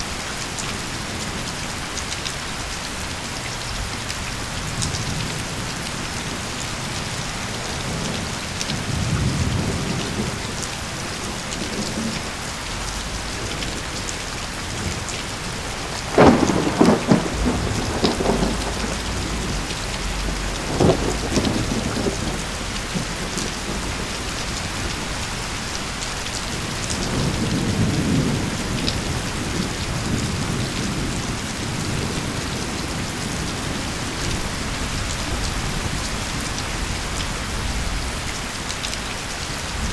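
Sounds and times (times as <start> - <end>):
steady rain: 0.0 - 39.9
low rolls of thunder: 3.8 - 38.2
sharp close thunderclap: 7.9 - 33.1.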